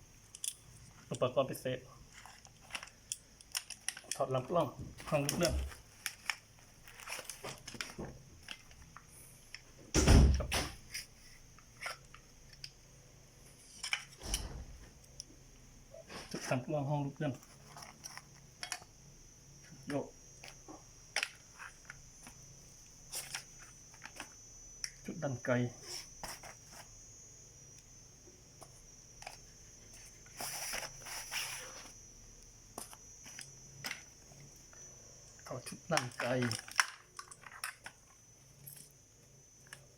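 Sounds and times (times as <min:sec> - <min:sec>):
small clicks and scrapes of rifle parts: 0:02.1 - 0:04.3, 0:13.6 - 0:14.3.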